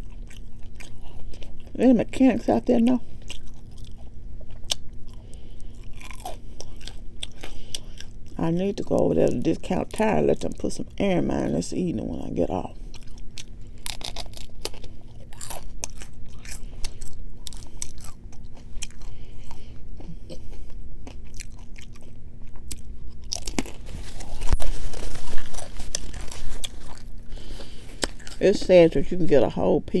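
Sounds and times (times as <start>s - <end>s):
person biting and chewing food: 0.0s - 1.8s, 3.1s - 8.4s, 12.8s - 28.5s.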